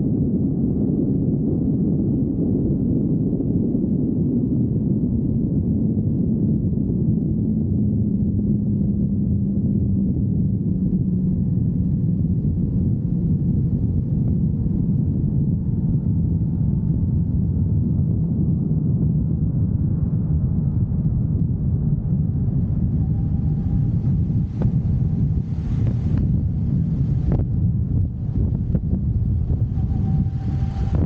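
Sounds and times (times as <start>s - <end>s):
wind rushing over microphone: 0.0s - 31.0s
motorcycle engine cruising: 22.5s - 31.0s.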